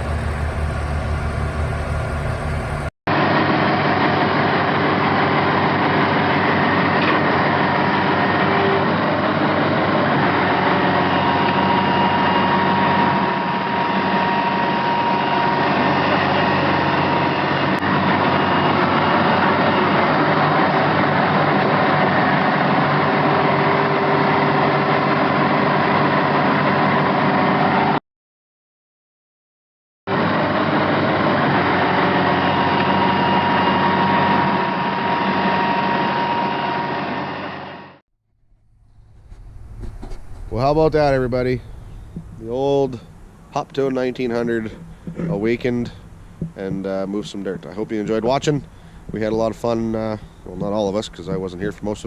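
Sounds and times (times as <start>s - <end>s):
excavator engine running: 0.0s - 2.9s, 5.9s - 27.4s, 30.1s - 52.0s
faint steady whine: 0.0s - 2.9s, 38.4s - 52.0s.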